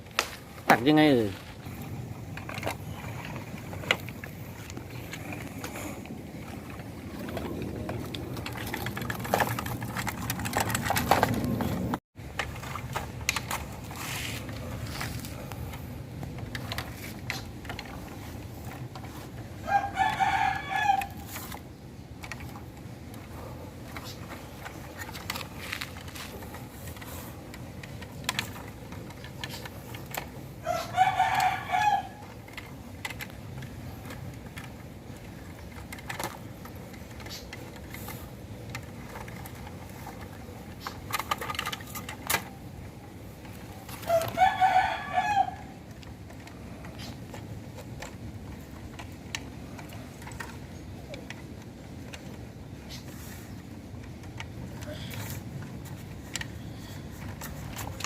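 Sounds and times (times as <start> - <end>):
faint clicks and scrapes: 0.0 - 58.0
rooster crowing: 19.6 - 21.2, 30.6 - 32.3, 44.0 - 45.8.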